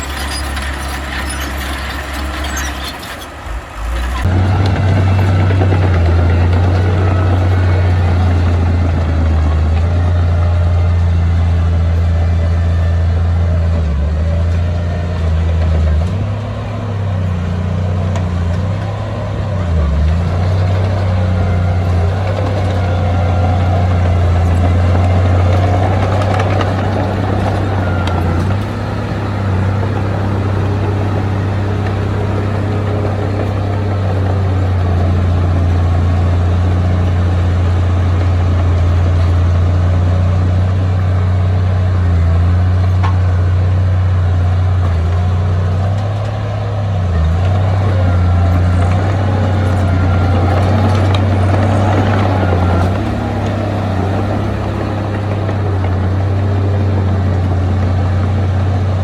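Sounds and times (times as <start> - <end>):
heavy diesel engine running: 0.0 - 59.0.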